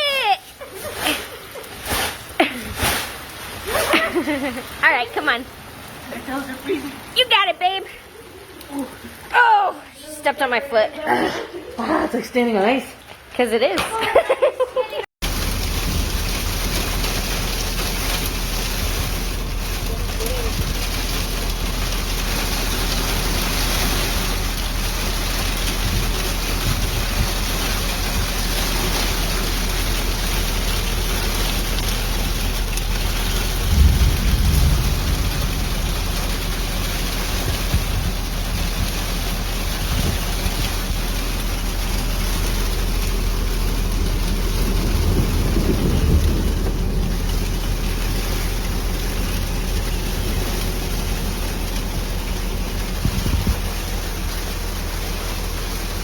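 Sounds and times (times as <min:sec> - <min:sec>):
heavy rain and hail: 0:00.0 - 0:10.1, 0:15.2 - 0:56.0
low thunder rumbles: 0:15.2 - 0:56.0.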